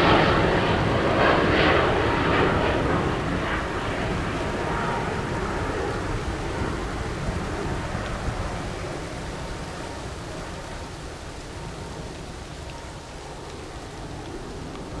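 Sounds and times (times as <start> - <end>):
distant jet engine rumble: 0.0 - 15.0.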